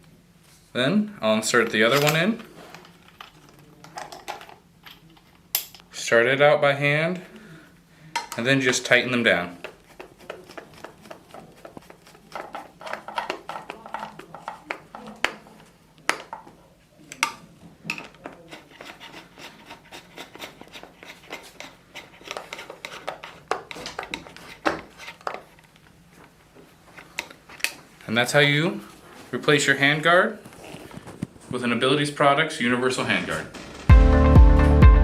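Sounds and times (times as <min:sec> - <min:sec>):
screwdriver clicking and scraping: 0:09.6 - 0:15.1, 0:17.9 - 0:25.7.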